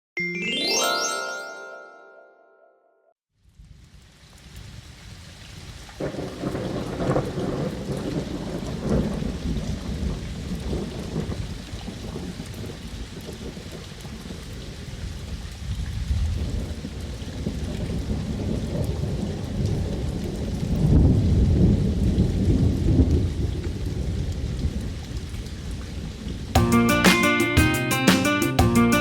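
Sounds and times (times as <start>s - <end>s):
steady rain falling: 3.4s - 26.6s
rolling thunder: 6.0s - 13.8s, 15.7s - 25.2s.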